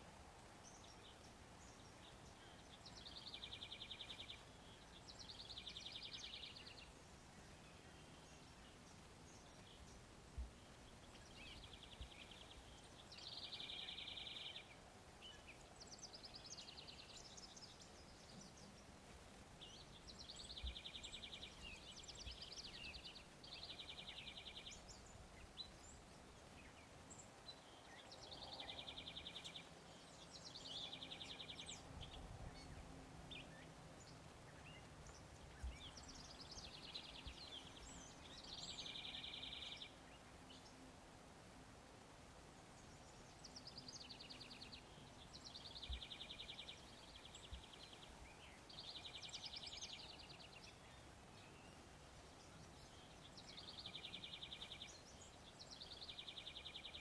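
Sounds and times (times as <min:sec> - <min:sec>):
bird chirps: 0:10.6 - 0:18.9, 0:19.6 - 0:40.9.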